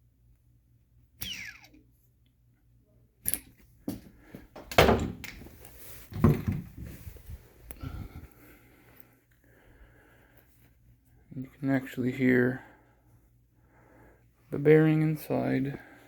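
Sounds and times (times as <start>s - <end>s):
handling knocks: 6.1s - 7.0s.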